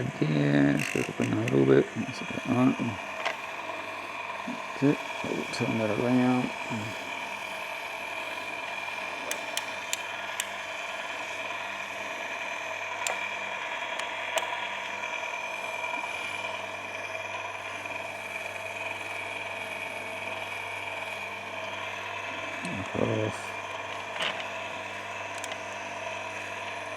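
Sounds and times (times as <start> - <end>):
sharpener motor humming with whine: 0.0 - 26.9
sharp clicks: 9.3 - 10.5, 13.0 - 13.2.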